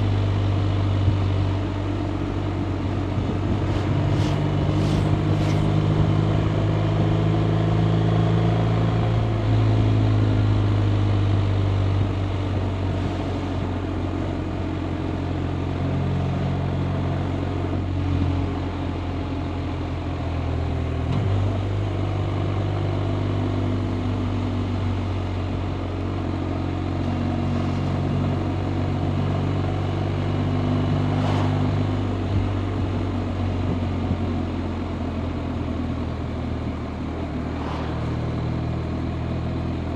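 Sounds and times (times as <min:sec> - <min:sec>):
motorcycle engine running: 0:00.0 - 0:08.3.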